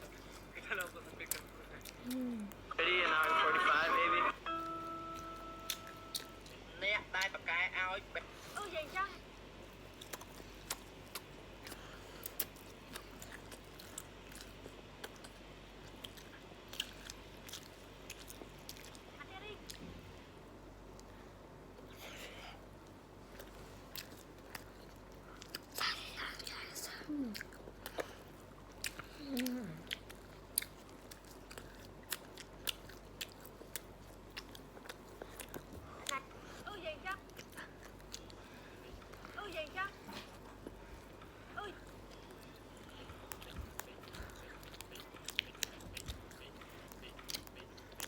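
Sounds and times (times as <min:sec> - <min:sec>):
chewing and biting waffles: 0:00.0 - 0:04.1, 0:09.7 - 0:19.9, 0:21.8 - 0:48.0
low hum falling in pitch: 0:04.3 - 0:06.5.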